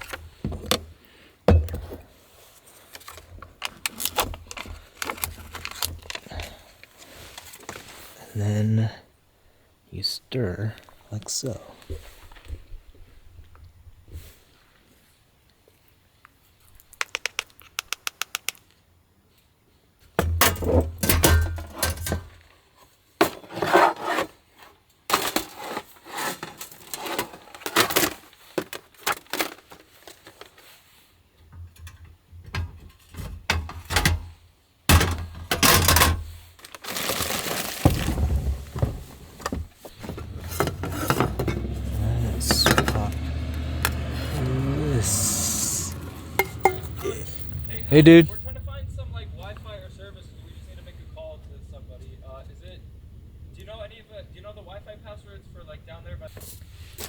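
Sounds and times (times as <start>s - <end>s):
sharp clicks: 16.9s - 18.7s
utensils scraping pots: 38.8s - 48.2s.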